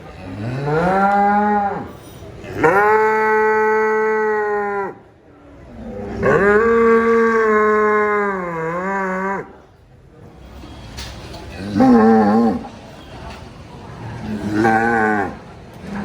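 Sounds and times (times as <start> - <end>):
cow mooing: 0.1 - 2.0, 5.8 - 9.5, 11.6 - 12.8, 14.2 - 16.0.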